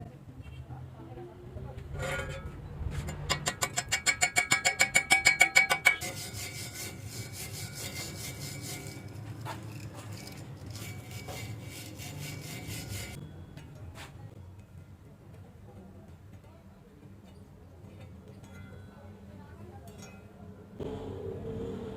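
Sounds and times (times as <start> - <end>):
metal-on-metal scraping: 1.8 - 13.3.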